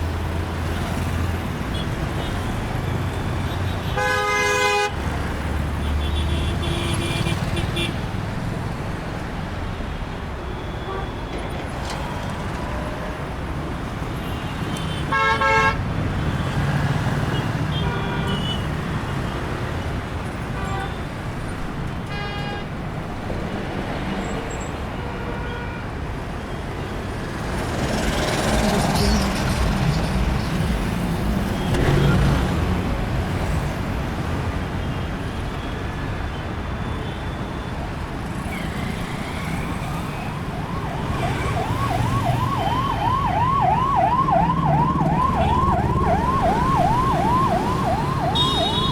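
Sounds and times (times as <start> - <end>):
vehicles passing close: 0.0 - 25.0, 25.9 - 36.7, 37.4 - 48.9
rumble of engines and tyres: 0.0 - 48.9
car horns honking: 3.5 - 5.1, 14.2 - 15.8, 22.1 - 22.8, 28.0 - 32.8, 48.2 - 48.9.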